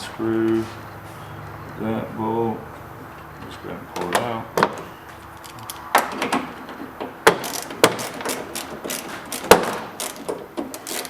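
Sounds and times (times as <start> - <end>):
hand tool clicking and knocking: 5.4 - 11.0.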